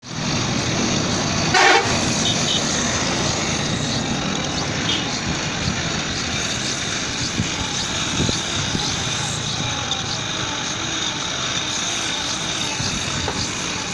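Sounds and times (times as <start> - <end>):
knife on grinding wheel hissing: 1.0 - 13.9
short horn-like toot: 1.5 - 2.7.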